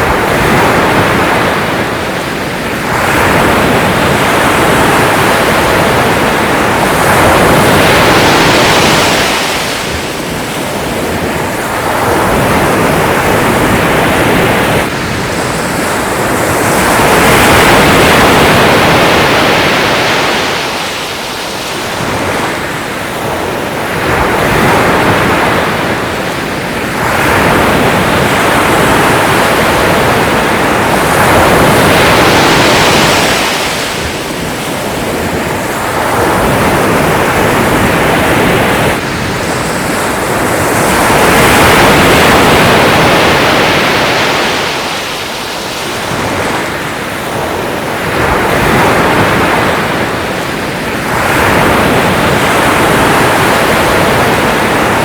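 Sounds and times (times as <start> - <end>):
sea waves breaking: 0.0 - 55.0.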